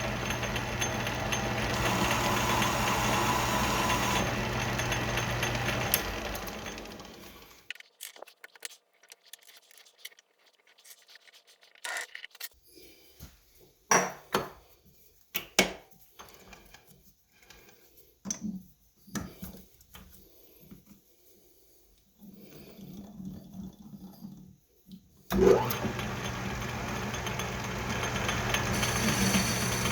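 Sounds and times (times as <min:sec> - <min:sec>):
machine humming: 0:00.0 - 0:07.4, 0:25.3 - 0:29.9.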